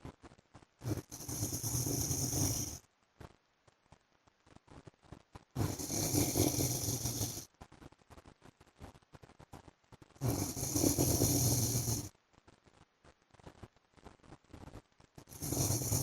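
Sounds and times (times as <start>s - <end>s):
man snoring: 0.9s - 2.8s, 5.6s - 7.4s, 10.2s - 12.1s, 15.3s - 16.0s.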